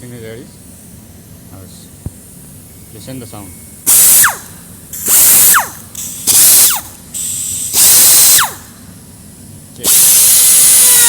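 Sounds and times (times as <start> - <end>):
pneumatic grinder whining: 3.9 - 8.8, 9.8 - 11.0.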